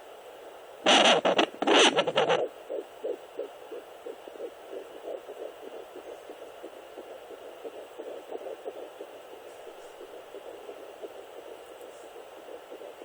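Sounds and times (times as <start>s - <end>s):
steady hiss: 0.0s - 13.0s
burst of scratchy noise: 0.9s - 2.4s
fetal heartbeat pulses on doppler: 0.9s - 13.0s.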